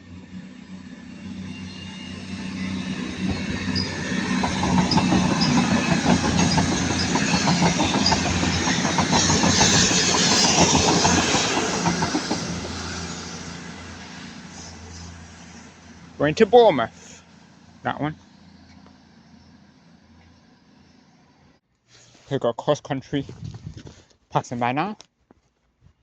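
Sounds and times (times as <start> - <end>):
train engine hum: 0.0 - 21.6
train wheels clicking over rail joints: 2.8 - 13.3.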